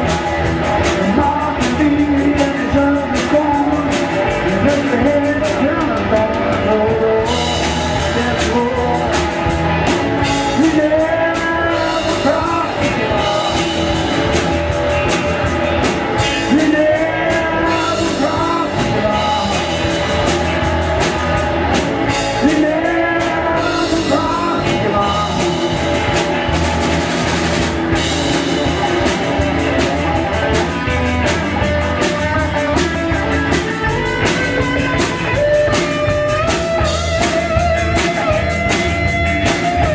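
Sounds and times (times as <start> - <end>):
rock song with vocals: 0.0 - 39.9.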